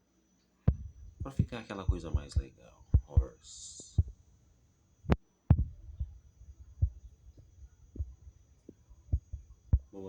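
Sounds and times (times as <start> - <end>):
sharp clicks: 0.7 - 4.2
soft low knocks and thumps: 0.7 - 4.2, 5.1 - 10.0.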